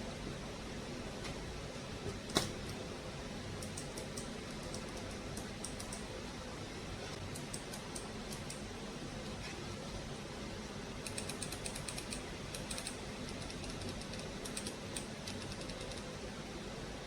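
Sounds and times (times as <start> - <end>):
low background hum: 0.0 - 17.0
computer mouse clicking: 3.6 - 6.1, 7.2 - 8.7, 11.0 - 16.1.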